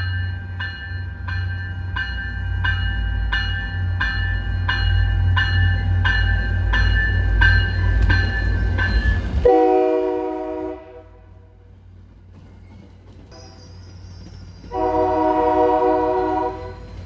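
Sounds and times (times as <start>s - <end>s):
passing train rumble: 0.0s - 17.0s
locomotive air horn blasts: 9.4s - 11.4s, 14.7s - 16.9s.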